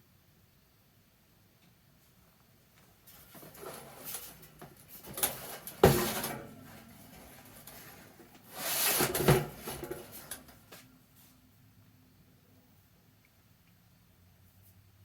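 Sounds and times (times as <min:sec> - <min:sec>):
rustling and scraping: 0:03.0 - 0:11.4.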